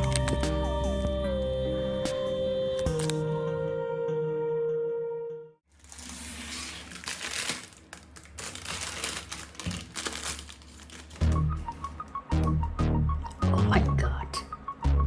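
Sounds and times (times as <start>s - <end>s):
background music with low beat: 0.0s - 3.4s, 11.2s - 15.0s
plastic crinkling: 5.7s - 11.8s.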